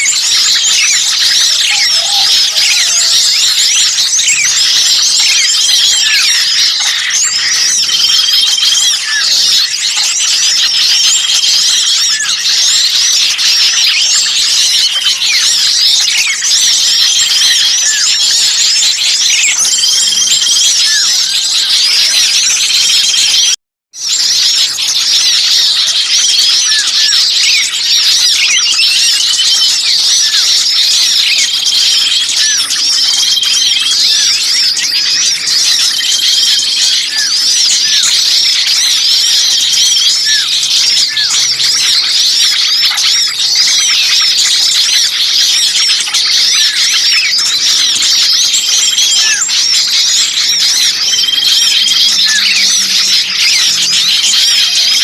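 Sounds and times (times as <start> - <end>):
songbirds chirping chorus: 0.0 - 55.0.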